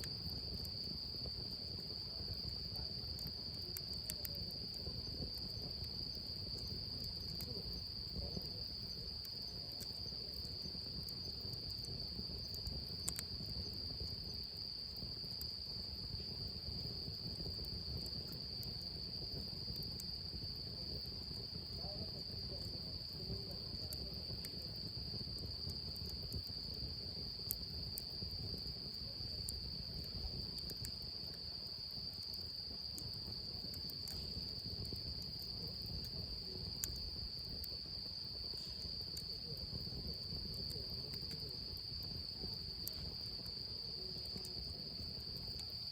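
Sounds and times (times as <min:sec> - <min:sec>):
insects trilling: 0:00.0 - 0:45.9
faint clicks: 0:33.8 - 0:34.4.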